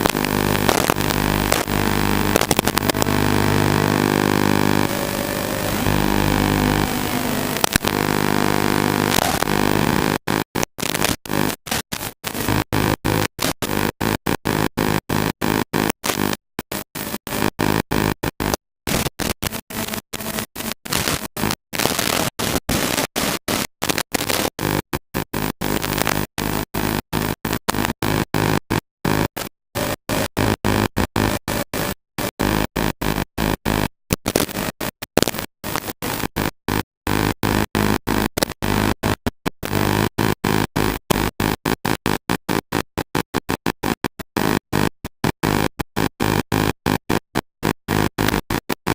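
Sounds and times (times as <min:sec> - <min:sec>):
loud chopped electronic music: 0:00.0 - 0:10.2.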